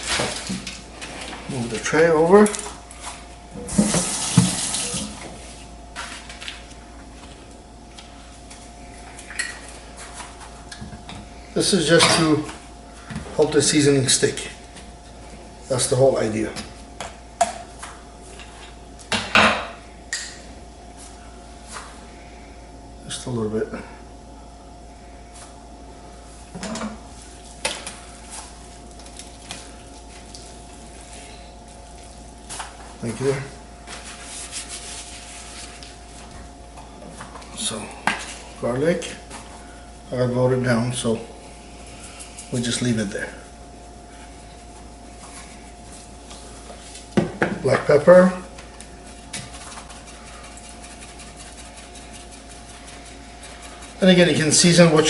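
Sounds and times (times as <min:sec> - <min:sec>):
steady low hum: 0:00.0 - 0:55.0
liquid spraying with hiss: 0:03.8 - 0:05.1.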